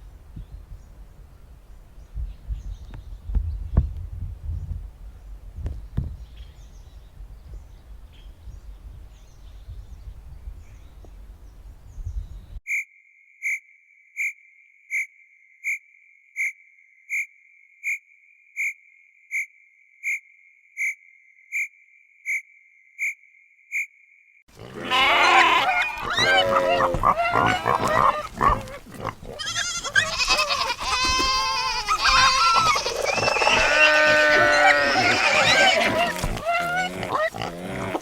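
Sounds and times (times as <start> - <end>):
high-pitched chirps: 12.7 - 24.4.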